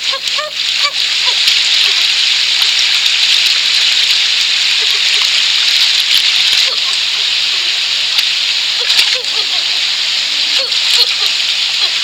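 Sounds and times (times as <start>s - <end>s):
waterfowl honking: 0.0s - 2.2s, 6.5s - 7.1s, 8.8s - 9.8s, 10.5s - 12.0s
hiss of water: 0.0s - 12.0s.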